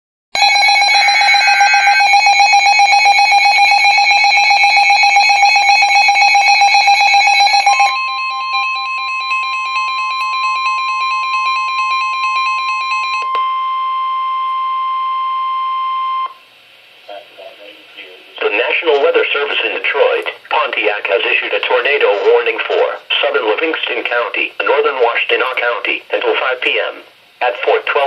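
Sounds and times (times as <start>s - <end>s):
rapid electronic alarm beeping: 0.4s - 16.4s
steady warning tone: 0.4s - 16.5s.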